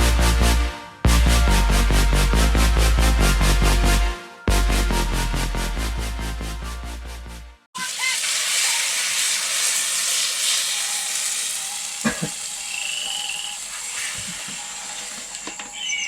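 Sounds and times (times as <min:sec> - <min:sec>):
fish sizzling in a pan: 0:07.8 - 0:15.7.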